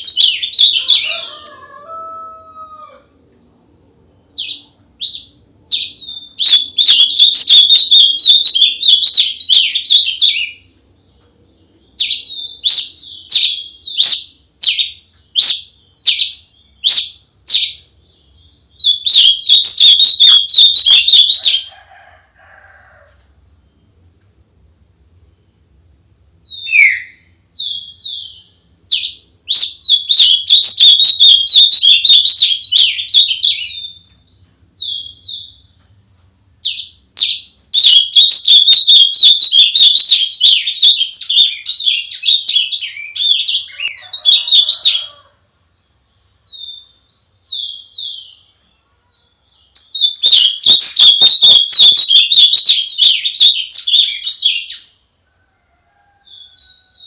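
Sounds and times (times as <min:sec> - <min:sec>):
songbird warbling: 0:04.4 - 0:10.6, 0:18.8 - 0:21.7, 0:26.5 - 0:35.5, 0:37.2 - 0:45.2, 0:49.8 - 0:54.9.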